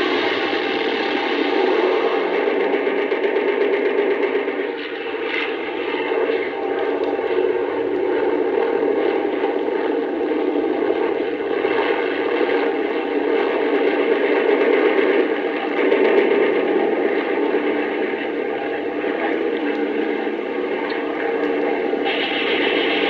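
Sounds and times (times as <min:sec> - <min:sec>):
aircraft engines droning: 0:00.0 - 0:23.0.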